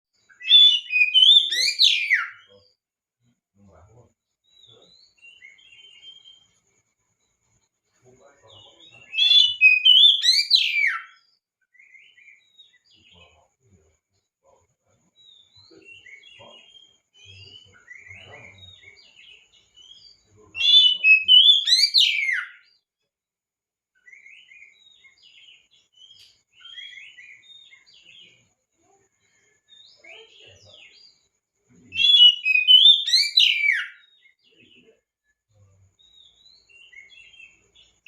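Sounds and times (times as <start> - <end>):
bird twittering: 0.3 - 2.6, 8.4 - 13.4, 15.3 - 22.7, 31.7 - 35.0
fast sweeping bird whistles: 0.5 - 2.4, 9.2 - 11.1, 20.6 - 22.6, 32.0 - 34.0.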